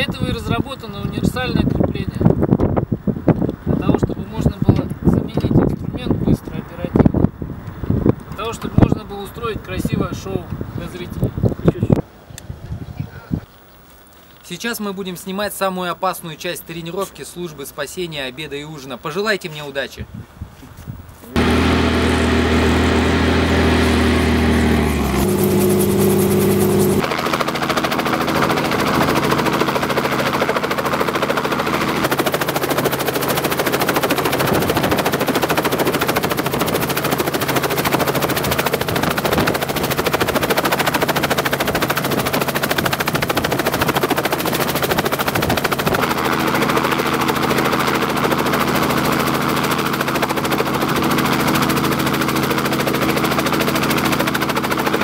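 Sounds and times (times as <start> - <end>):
helicopter rotor chop: 21.3 - 55.0.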